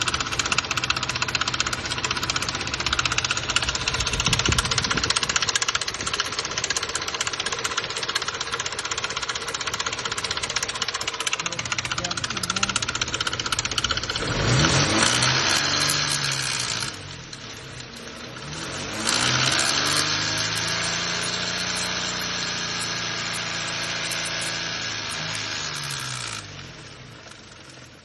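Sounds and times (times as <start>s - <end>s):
metallic timing chain rattle: 0.0s - 18.2s
car engine revving: 0.0s - 26.9s.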